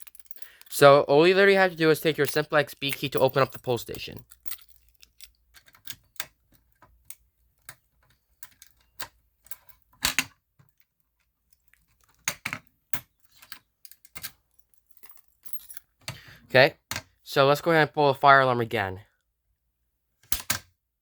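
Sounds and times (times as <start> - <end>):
key clicking and rattling in lock: 0.0 - 0.8, 2.0 - 7.2.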